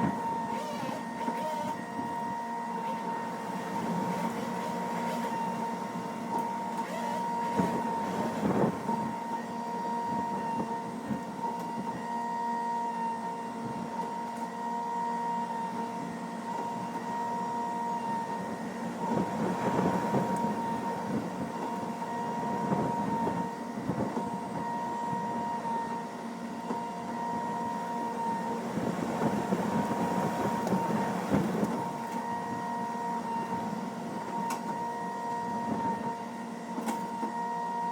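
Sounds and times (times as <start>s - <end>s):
power trimmer motor whining: 0.0s - 9.2s.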